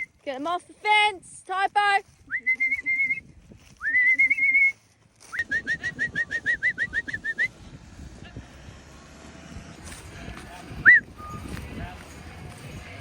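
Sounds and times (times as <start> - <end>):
swooping warbling whistles: 5.4 - 7.6, 10.8 - 11.5.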